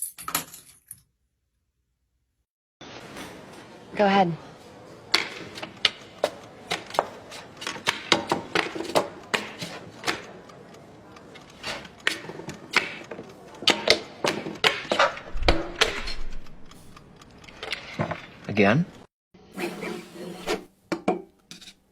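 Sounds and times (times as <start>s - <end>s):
sharp taps clicks and knocks: 5.1s - 19.0s.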